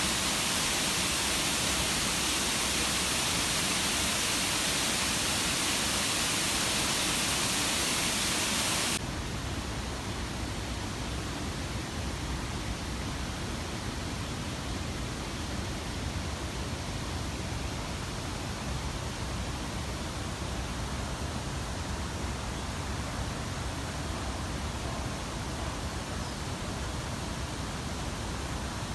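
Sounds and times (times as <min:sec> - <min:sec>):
artificial waterfall rushing: 0:00.0 - 0:09.0.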